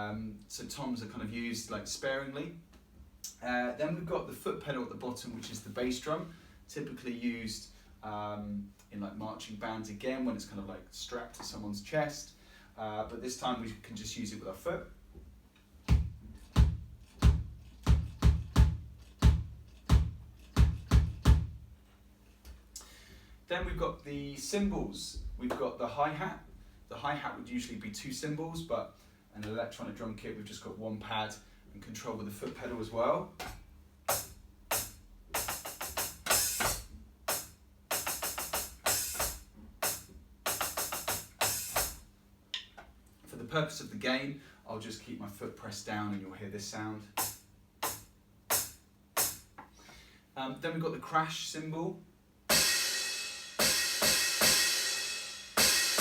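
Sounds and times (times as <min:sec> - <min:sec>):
electronic kick drum hits: 0:15.9 - 0:21.6
electronic hi-hat strokes: 0:34.1 - 0:42.1, 0:47.2 - 0:49.5.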